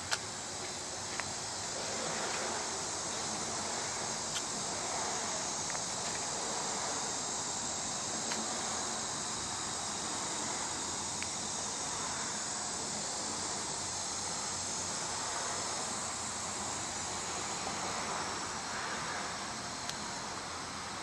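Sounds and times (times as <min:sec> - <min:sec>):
insects chorus: 0:00.0 - 0:21.0.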